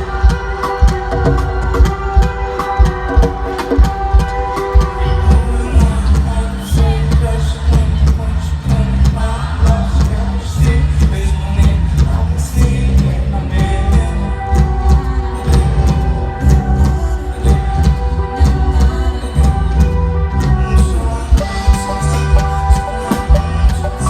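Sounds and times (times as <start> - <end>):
heavy bass line: 0.0 - 24.0
person singing: 0.0 - 24.0
hip-hop music over pa: 20.6 - 24.0.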